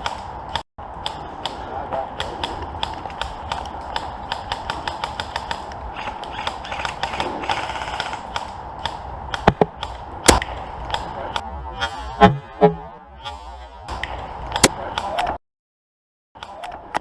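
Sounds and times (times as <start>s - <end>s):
airsoft gunfire clicks and cracks: 0.0s - 11.4s, 13.9s - 15.4s.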